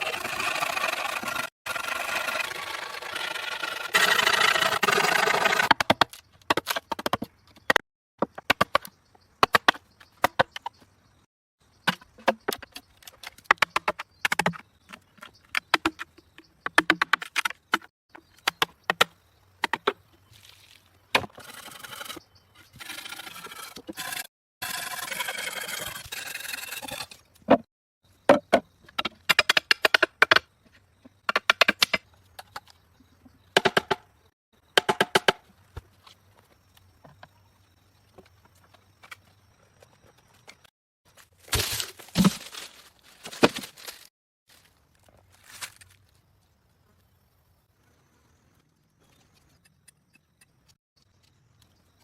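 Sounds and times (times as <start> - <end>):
hand tool scraping wood: 0.0 - 5.9, 21.3 - 27.2.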